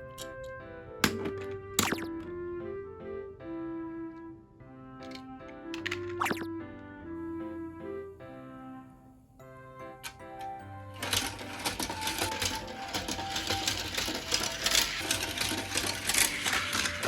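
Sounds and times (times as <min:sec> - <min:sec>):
background music: 0:00.0 - 0:17.0
toy vehicle rattling on plastic track: 0:05.0 - 0:05.2, 0:05.8 - 0:06.2, 0:10.0 - 0:17.0.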